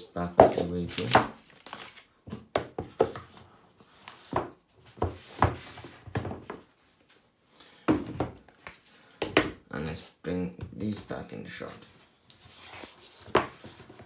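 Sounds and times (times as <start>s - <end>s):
cardboard boxes knocking and scraping: 4.3s - 6.7s.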